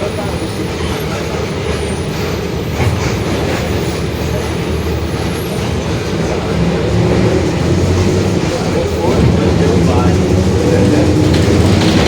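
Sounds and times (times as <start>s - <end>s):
road noise: 0.0s - 12.0s
diesel bus engine drone: 4.2s - 12.0s.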